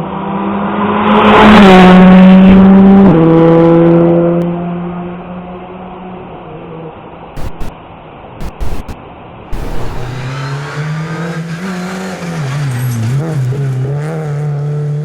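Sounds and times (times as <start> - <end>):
rally car engine passing by: 9.6 - 15.0.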